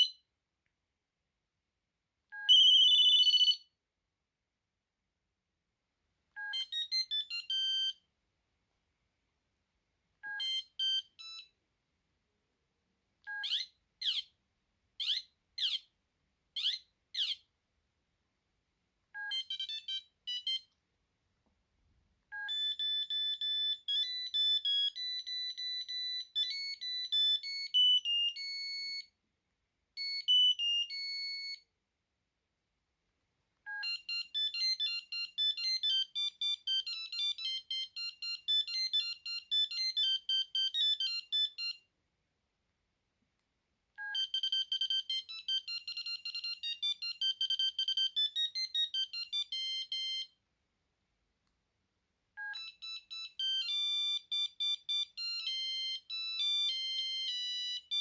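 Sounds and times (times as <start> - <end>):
monophonic ringtone beeps: 2.4 - 3.6, 22.4 - 29.1, 33.7 - 41.8, 44.0 - 50.3, 52.4 - 58.0.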